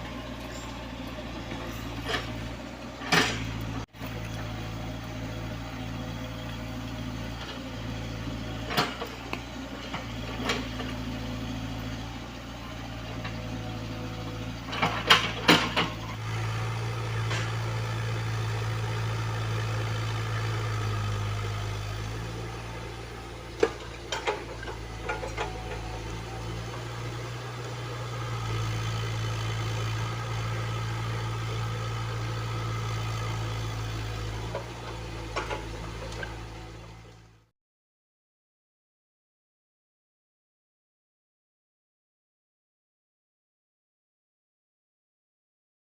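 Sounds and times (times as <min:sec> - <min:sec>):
excavator diesel engine running: 0:00.0 - 0:37.5.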